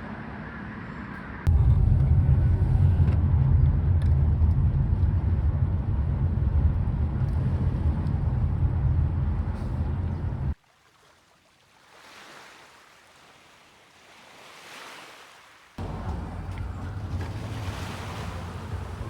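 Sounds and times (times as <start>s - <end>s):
vehicle rumbling: 0.0s - 10.6s, 15.8s - 19.0s.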